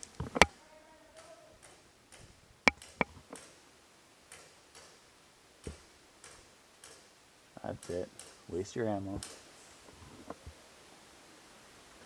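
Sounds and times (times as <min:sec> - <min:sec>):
airsoft gun snaps: 0:06.2 - 0:07.1, 0:07.8 - 0:08.4.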